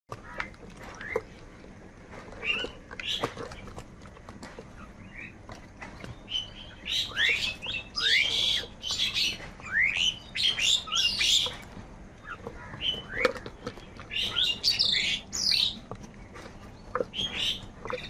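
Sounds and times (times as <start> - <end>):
crows calling harshly: 0.2 - 1.1.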